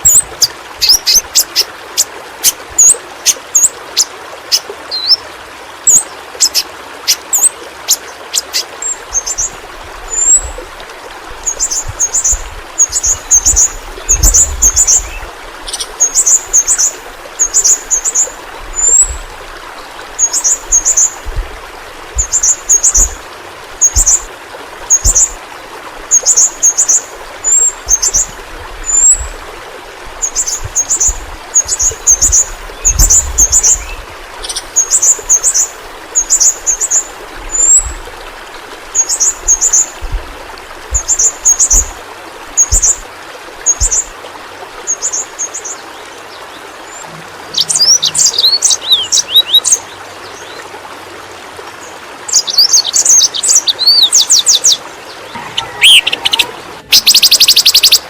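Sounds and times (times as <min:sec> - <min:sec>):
bird chirping high chips: 0:55.4 - 0:58.0.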